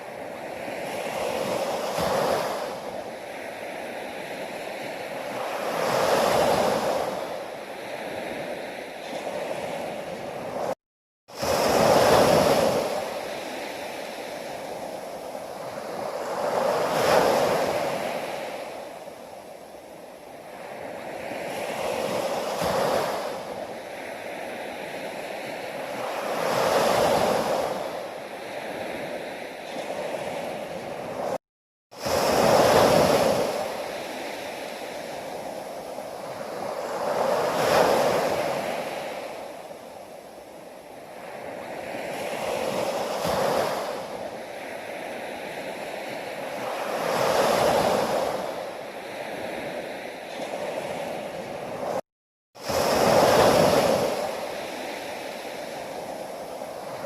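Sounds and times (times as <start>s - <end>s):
ocean waves breaking: 0.0s - 52.0s, 52.6s - 57.0s.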